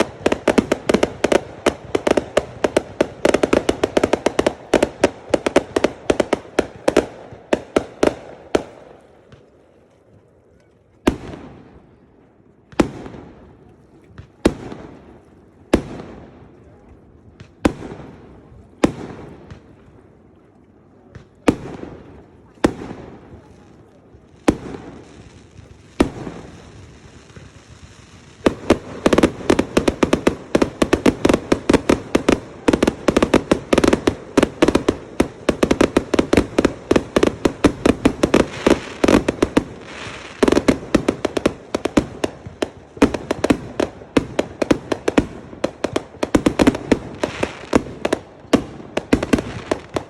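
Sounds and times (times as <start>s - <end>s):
fireworks bangs: 0.0s - 9.6s, 11.0s - 20.0s, 21.0s - 50.0s
rapid crackling pops: 24.4s - 50.0s.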